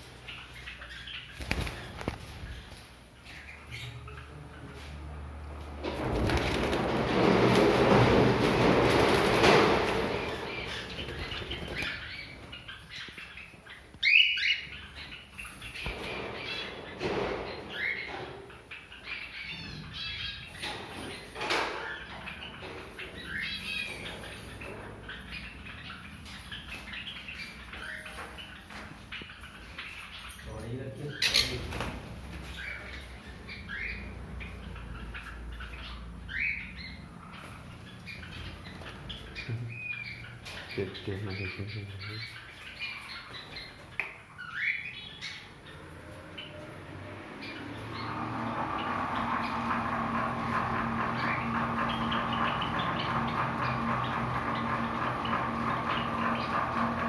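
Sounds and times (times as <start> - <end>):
birds chirping: 0.0 - 57.0
birds fluttering wings: 1.3 - 3.0, 4.8 - 12.8, 15.4 - 17.7, 31.2 - 33.3.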